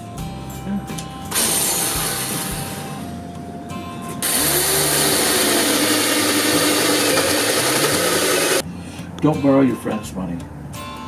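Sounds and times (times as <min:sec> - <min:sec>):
background music: 0:00.0 - 0:11.0
power drill boring: 0:01.3 - 0:03.0, 0:04.2 - 0:08.6.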